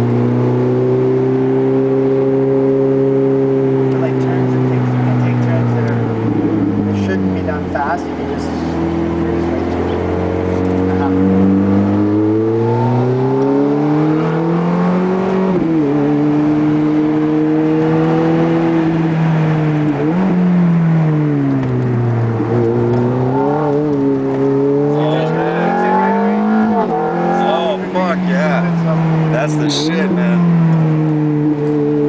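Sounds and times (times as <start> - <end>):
car engine revving through gears: 0.0 - 32.0.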